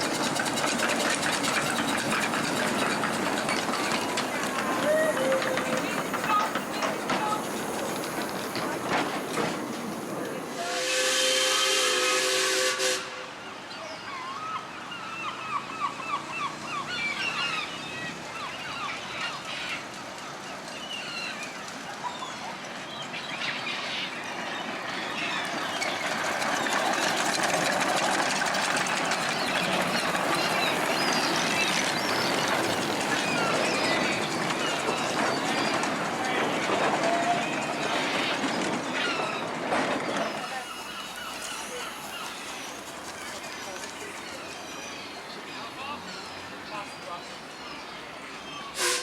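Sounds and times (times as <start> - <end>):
steam hissing: 0.0 - 13.3, 25.1 - 44.9, 48.7 - 49.0
steam locomotive whistle: 10.5 - 13.5, 48.7 - 49.0.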